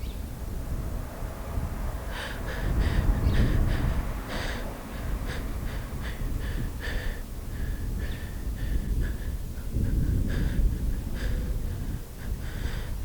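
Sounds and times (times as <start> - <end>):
low rumble: 0.0 - 13.0
fast gasping breaths: 2.1 - 13.0.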